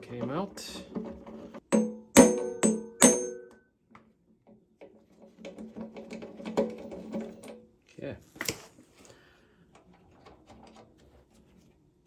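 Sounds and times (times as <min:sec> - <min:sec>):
ringing metallic strikes: 0:01.7 - 0:03.6.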